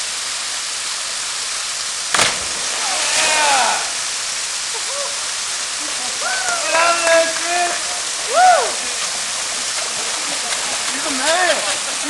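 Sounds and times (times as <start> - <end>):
waterfall rushing: 0.0 - 12.0
body splashing into water: 2.1 - 4.3.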